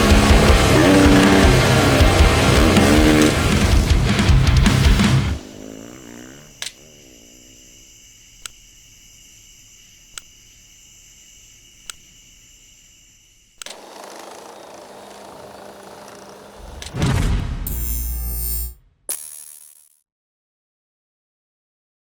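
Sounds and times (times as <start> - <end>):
sharp clicks: 4.2 - 7.0, 13.6 - 17.0.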